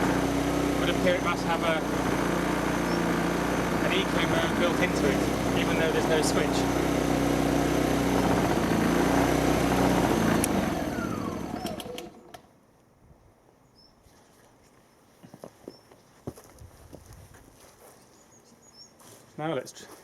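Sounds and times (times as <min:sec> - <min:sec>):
generator engine running: 0:00.0 - 0:12.5.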